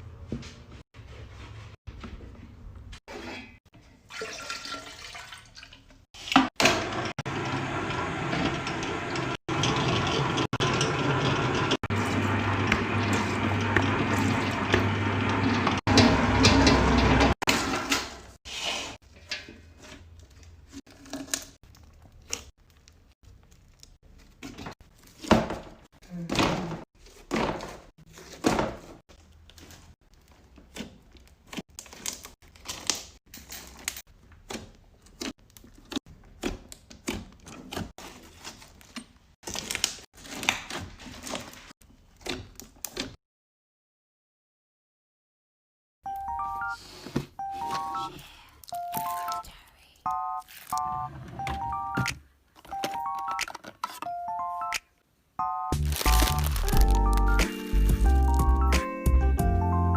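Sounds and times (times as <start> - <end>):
slime squishing and popping: 55.8 - 58.5.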